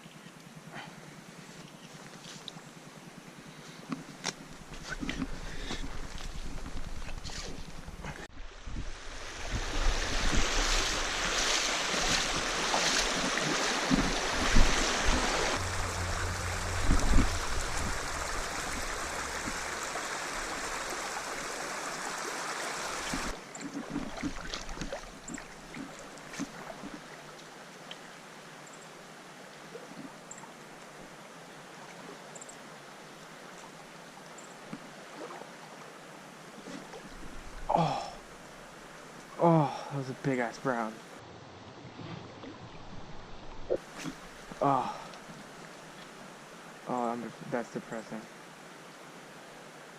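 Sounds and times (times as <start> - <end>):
rushing water of mountain stream: 4.4 - 41.2, 42.6 - 49.9
low thumps: 13.9 - 21.2.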